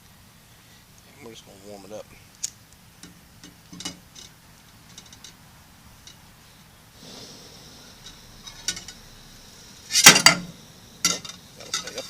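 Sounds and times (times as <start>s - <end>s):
camp stove burner hissing: 0.0s - 12.0s
camp cookware clinking: 3.0s - 5.4s, 6.0s - 6.3s, 7.9s - 9.2s, 9.8s - 12.0s.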